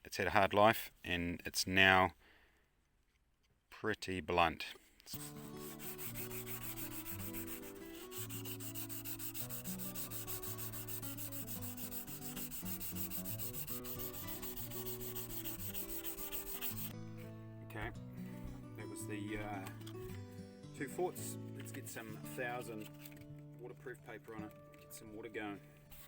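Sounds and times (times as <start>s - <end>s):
chisel rubbed on sandpaper: 5.1s - 17.4s, 21.6s - 23.2s, 25.0s - 26.0s
background music: 5.2s - 26.0s.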